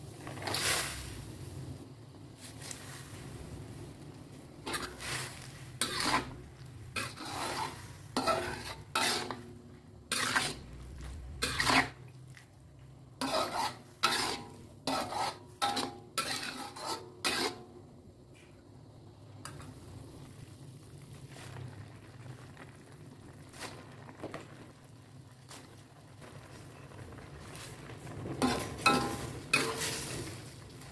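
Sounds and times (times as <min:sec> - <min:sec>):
utensil scraping a pan: 0:00.3 - 0:01.1, 0:04.6 - 0:12.1, 0:13.2 - 0:17.8, 0:28.4 - 0:30.9.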